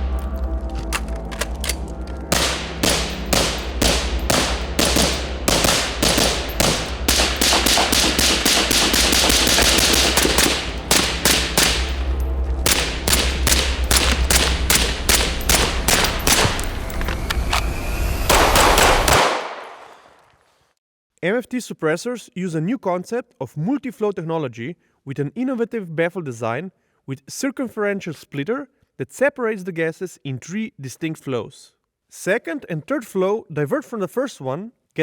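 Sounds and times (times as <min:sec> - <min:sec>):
low drone: 0:00.0 - 0:19.2
suppressed rifle shots: 0:02.3 - 0:16.9, 0:18.3 - 0:20.0.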